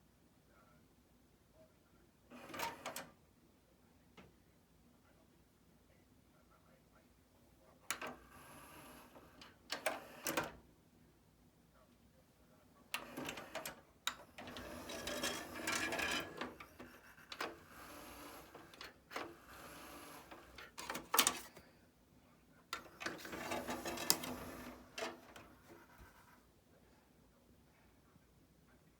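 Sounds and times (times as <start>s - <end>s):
cd changer whirring: 2.3s - 3.1s, 7.9s - 10.6s, 13.0s - 21.5s, 22.8s - 25.8s
cd changer clicks and clatter: 13.0s - 21.5s, 22.8s - 25.7s.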